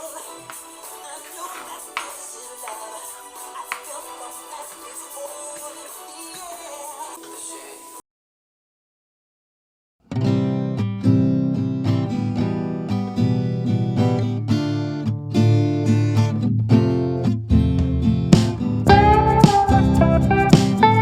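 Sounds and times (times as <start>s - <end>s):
acoustic guitar strumming: 10.1s - 21.0s.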